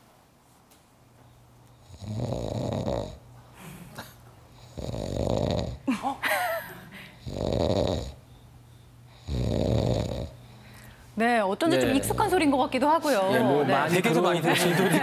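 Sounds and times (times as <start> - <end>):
person snoring loudly: 1.8 - 3.2, 4.6 - 5.8, 7.2 - 8.2, 9.2 - 10.4.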